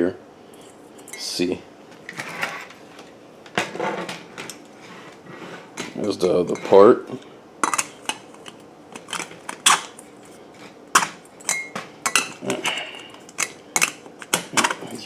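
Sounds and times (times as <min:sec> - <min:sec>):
plastic parts clicking and clattering: 0:13.3 - 0:15.0.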